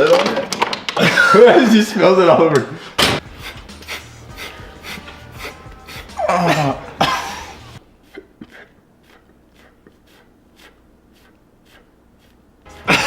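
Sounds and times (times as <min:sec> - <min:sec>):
man making vocal sound effect: 0:03.3 - 0:07.8.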